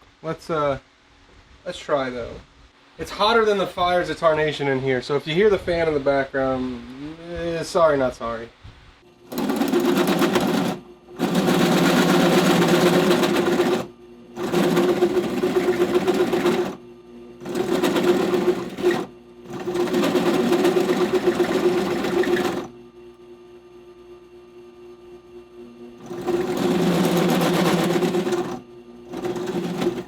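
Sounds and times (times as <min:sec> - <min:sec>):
fan humming: 0:00.0 - 0:30.0.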